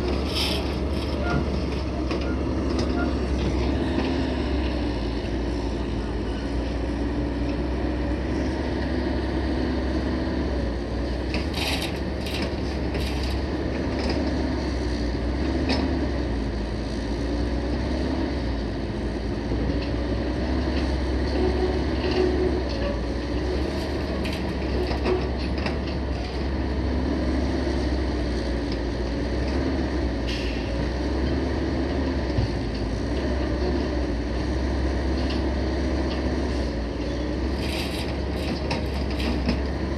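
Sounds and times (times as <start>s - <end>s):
diesel truck engine running: 0.0s - 39.9s
metallic clanks and rattles: 11.2s - 14.2s, 37.5s - 39.9s.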